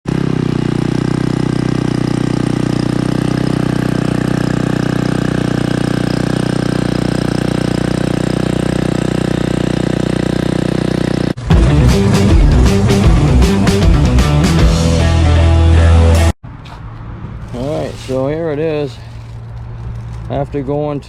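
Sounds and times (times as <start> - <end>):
small gasoline engine running: 0.1 - 14.2.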